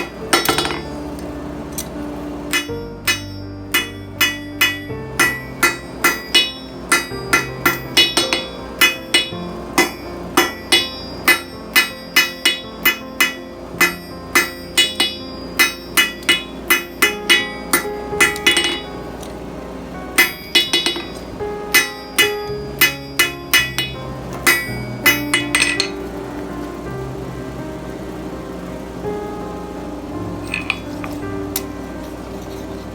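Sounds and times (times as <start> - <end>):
background music: 0.0 - 32.9
hammer ringing on steel: 2.5 - 19.0, 20.2 - 26.0.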